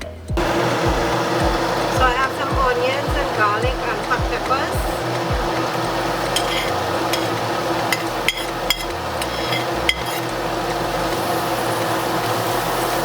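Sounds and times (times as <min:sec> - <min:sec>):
vegetables sizzling in hot oil: 0:00.4 - 0:13.0
utensil clinking against pot: 0:05.0 - 0:12.4.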